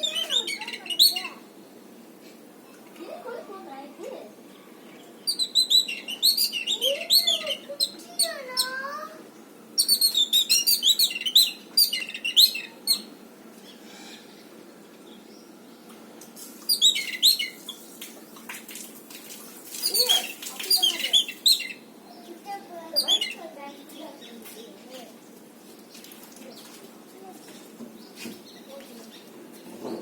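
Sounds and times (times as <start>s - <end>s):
birds chirping rapidly: 0.0s - 2.0s, 4.4s - 18.5s, 19.7s - 25.2s.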